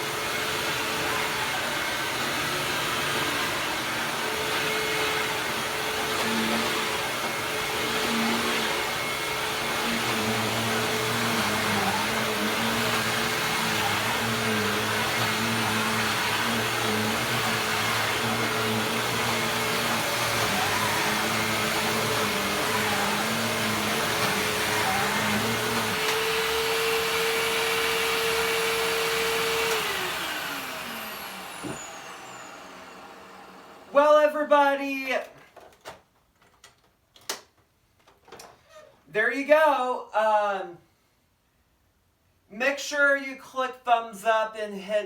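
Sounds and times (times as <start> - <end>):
upright vacuum cleaner running: 0.0 - 34.1.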